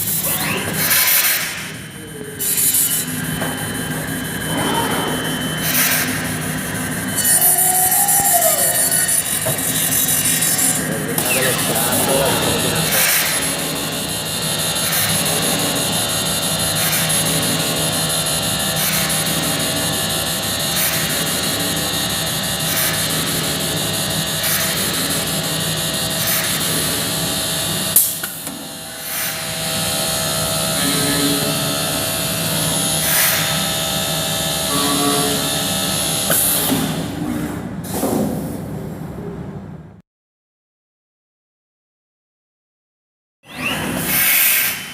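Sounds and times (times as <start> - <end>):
cnc machine spindle whine: 0.0 - 37.3, 43.5 - 44.9.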